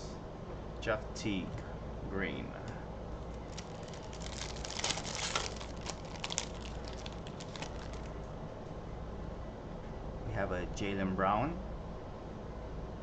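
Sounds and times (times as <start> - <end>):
card pack crinkling: 3.3 - 8.2.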